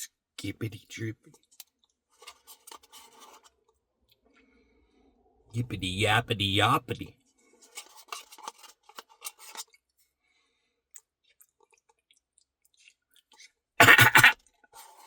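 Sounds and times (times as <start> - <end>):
chewing: 11.0 - 13.5.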